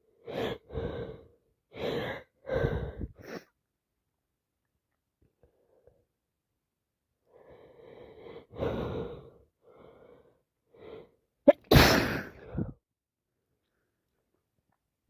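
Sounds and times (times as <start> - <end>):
person sneezing loudly: 11.5 - 12.7
person gasping before sneeze: 11.5 - 12.8.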